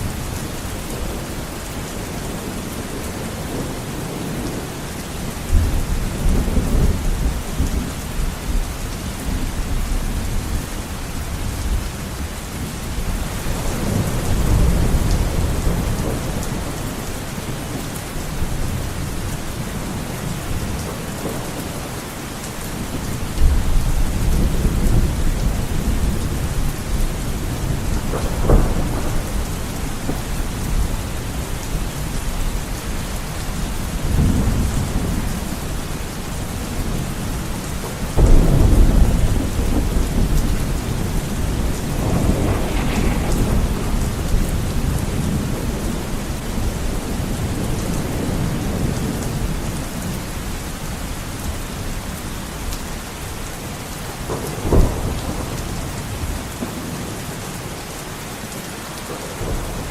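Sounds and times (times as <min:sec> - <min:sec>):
heavy rain on a window: 0:00.0 - 0:59.9
rolling thunder: 0:13.0 - 0:22.0, 0:22.8 - 0:50.7, 0:54.0 - 0:57.2
sharp thunder crack: 0:38.2 - 0:46.0.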